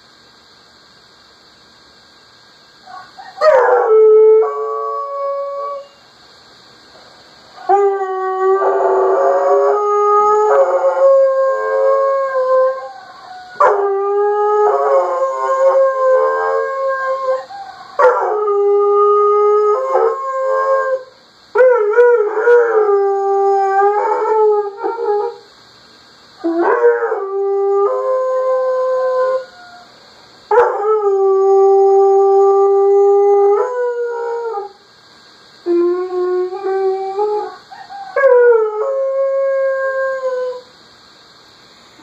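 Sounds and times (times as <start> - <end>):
dog howling: 7.6 - 25.4, 26.4 - 29.9.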